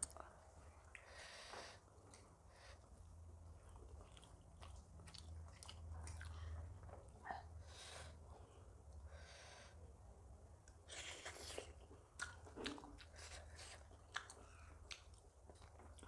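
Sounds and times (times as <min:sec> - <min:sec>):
chewing with wet mouth smacks: 0:03.5 - 0:07.2, 0:10.7 - 0:16.0.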